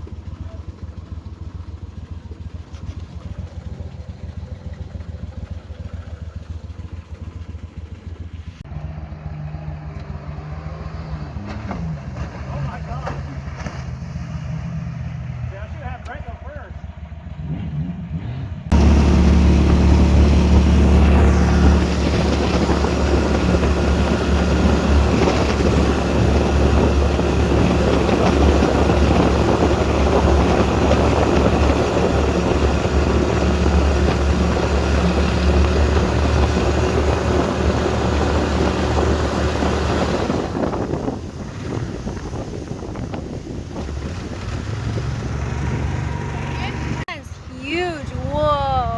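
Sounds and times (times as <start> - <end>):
boat engine droning: 18.7 - 48.9.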